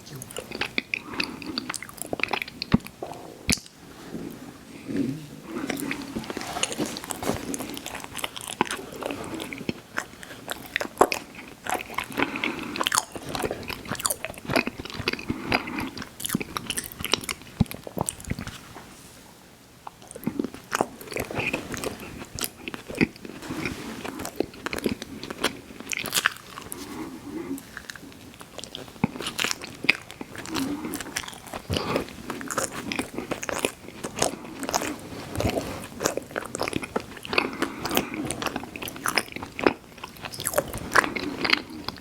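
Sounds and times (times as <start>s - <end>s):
crunchy chewing: 0.1s - 3.8s, 5.4s - 18.6s, 19.9s - 42.0s.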